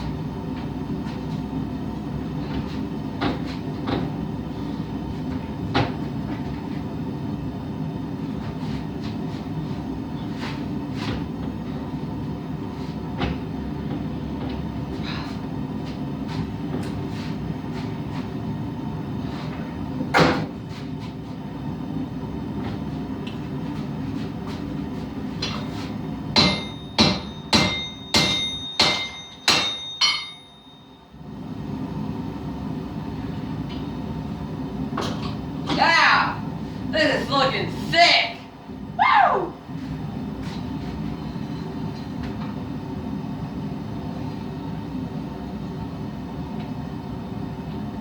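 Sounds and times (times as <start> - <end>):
hammer ringing on anvil: 26.4 - 31.1.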